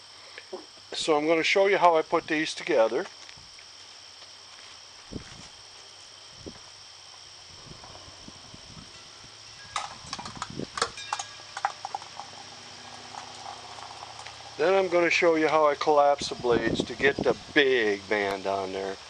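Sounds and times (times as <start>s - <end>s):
metal blades clinking: 9.7s - 11.8s.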